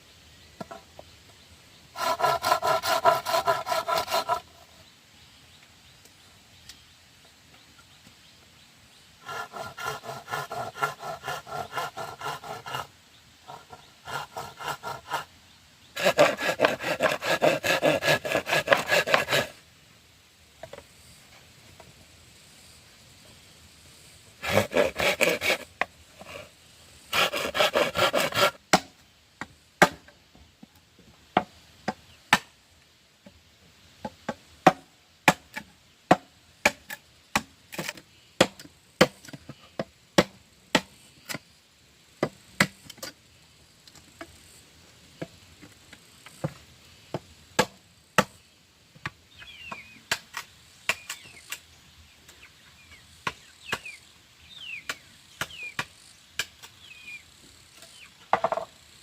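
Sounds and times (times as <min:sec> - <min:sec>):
hand tool striking wood: 0:16.0 - 0:19.5, 0:27.1 - 0:30.1, 0:34.0 - 0:40.9, 0:46.4 - 0:48.3, 0:58.3 - 0:58.7.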